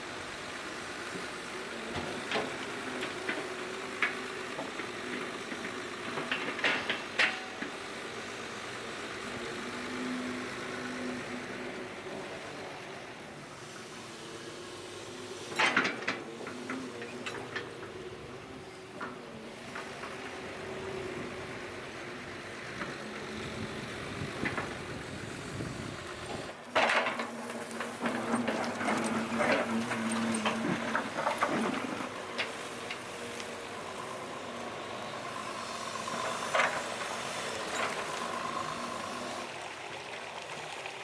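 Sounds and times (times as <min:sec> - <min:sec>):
constant hiss: 0:00.0 - 0:41.0
faint engine hum: 0:00.0 - 0:41.0
metal clanks and knocks: 0:15.5 - 0:18.0, 0:26.7 - 0:33.0.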